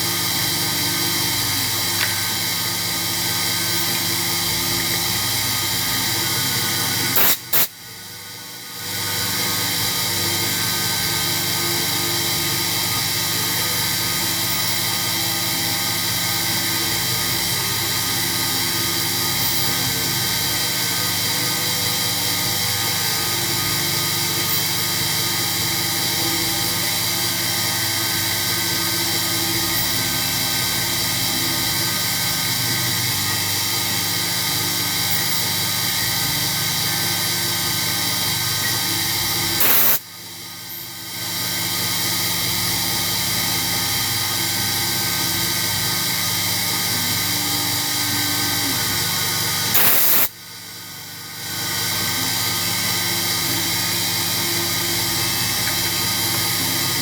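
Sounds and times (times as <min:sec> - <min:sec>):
milling spindle whine: 0:00.0 - 0:57.0
hiss: 0:07.1 - 0:07.7, 0:39.6 - 0:40.0, 0:49.7 - 0:50.3.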